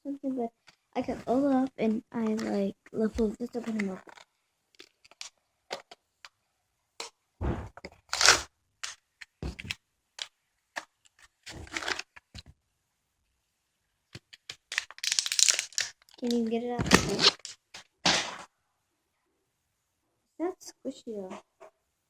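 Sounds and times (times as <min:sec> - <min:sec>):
plastic packaging crinkling: 0:03.6 - 0:05.4, 0:14.3 - 0:17.8.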